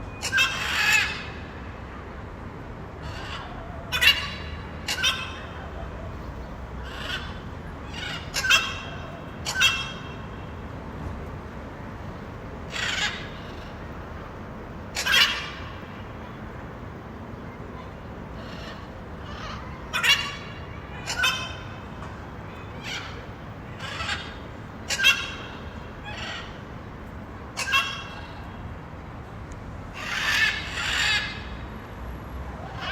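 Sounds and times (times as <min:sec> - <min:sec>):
parrot screeching calls: 0:00.2 - 0:01.2, 0:03.0 - 0:05.6, 0:06.8 - 0:10.3, 0:12.7 - 0:14.3, 0:14.9 - 0:16.3, 0:18.4 - 0:21.9, 0:22.7 - 0:26.6, 0:27.6 - 0:28.4, 0:30.0 - 0:31.4.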